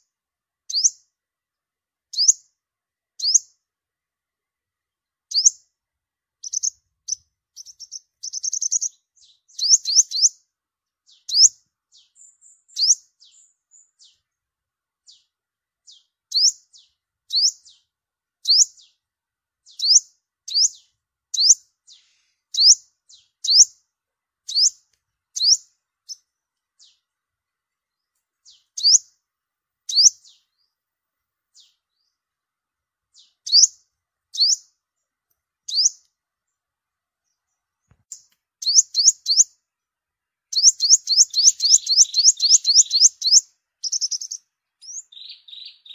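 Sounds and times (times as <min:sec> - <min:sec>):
bird calling high chips: 0:40.6 - 0:45.9.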